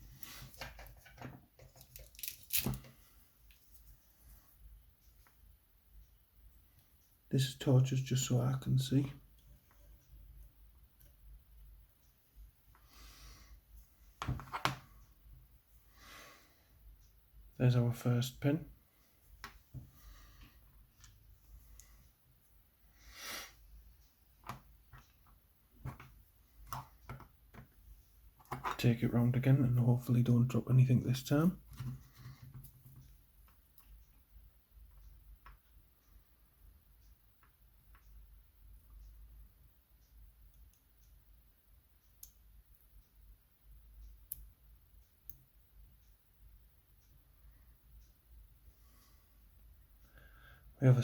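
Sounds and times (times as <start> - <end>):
soft hiss: 2.1 - 27.0.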